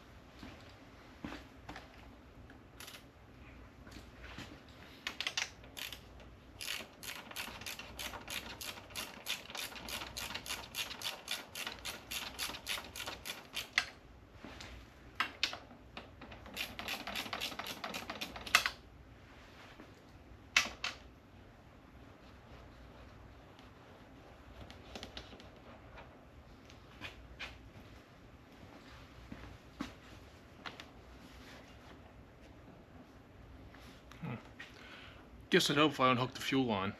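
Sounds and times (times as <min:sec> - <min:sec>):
hand ratchet clicking: 0:05.1 - 0:13.9, 0:16.3 - 0:18.8.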